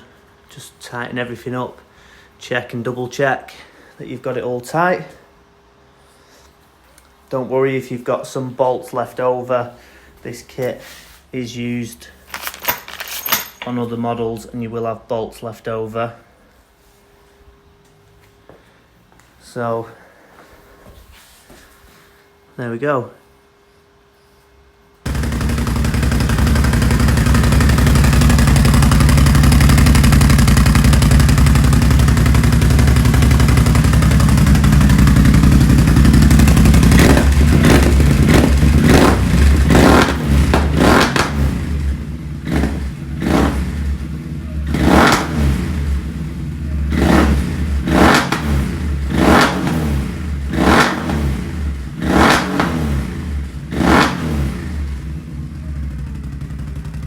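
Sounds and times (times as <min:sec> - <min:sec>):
engine running and revving: 0:25.1 - 0:57.0.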